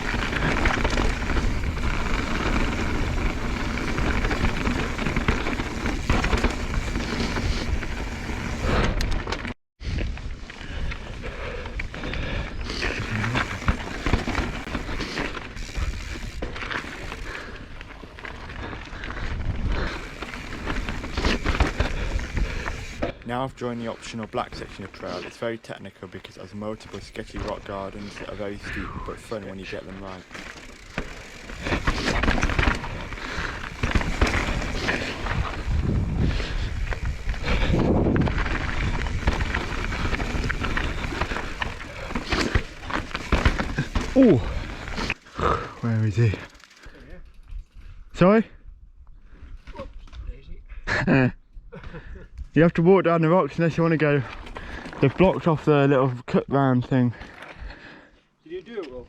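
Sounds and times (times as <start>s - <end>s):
bike clattering over bumps: 0.0s - 9.5s, 12.7s - 17.7s, 19.8s - 23.2s, 29.6s - 47.1s
tyres on loose ground: 0.0s - 48.5s, 49.3s - 59.0s.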